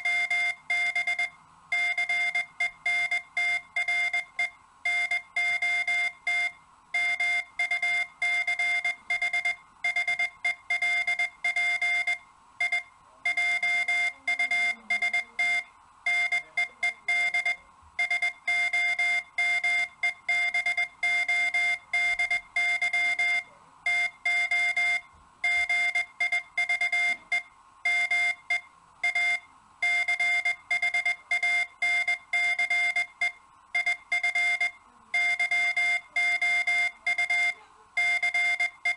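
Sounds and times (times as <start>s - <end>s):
morse code beeps: 0.0s - 38.9s.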